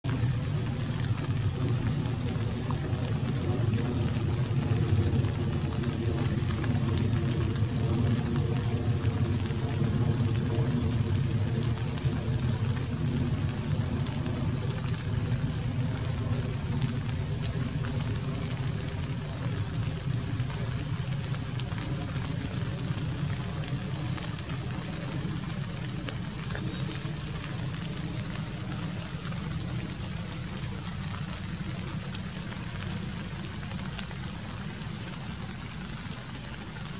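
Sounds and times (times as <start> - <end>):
low engine-like hum: 0.0 - 36.9
steady rain: 0.0 - 36.9.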